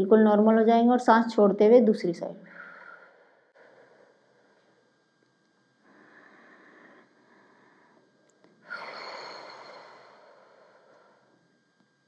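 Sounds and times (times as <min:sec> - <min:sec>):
woman breathing through nose: 0:05.8 - 0:11.4.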